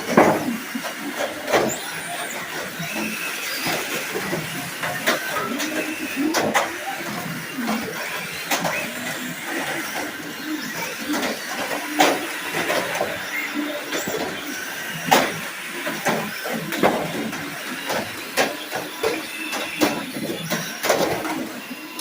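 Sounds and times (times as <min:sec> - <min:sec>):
plastic knocks of collisions: 0:00.0 - 0:01.8, 0:13.9 - 0:21.6
toy car motors whirring: 0:00.0 - 0:22.0.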